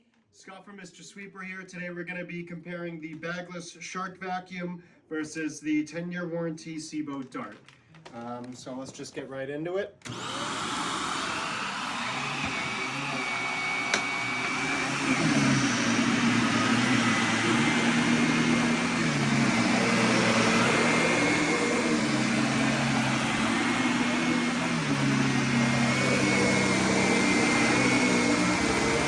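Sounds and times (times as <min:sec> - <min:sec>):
vacuum cleaner running: 0:10.0 - 0:29.0.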